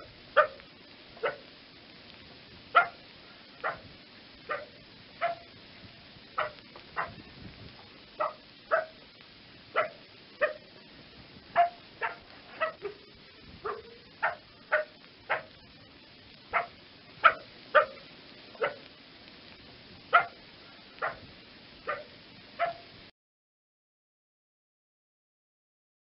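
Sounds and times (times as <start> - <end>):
fox barking: 0.0 - 1.5, 2.7 - 5.6, 6.4 - 7.3, 8.2 - 9.0, 9.7 - 10.7, 11.5 - 15.7, 16.5 - 18.9, 20.1 - 22.9.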